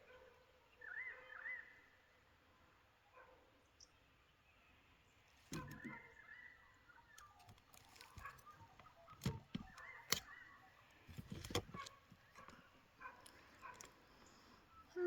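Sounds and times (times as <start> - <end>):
distant dog barking: 0.0 - 1.7, 3.0 - 3.6, 8.1 - 11.0, 11.6 - 14.0.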